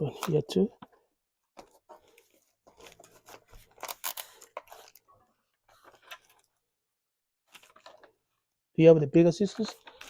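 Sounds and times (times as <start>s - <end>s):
scissors cutting packaging: 3.6s - 5.0s.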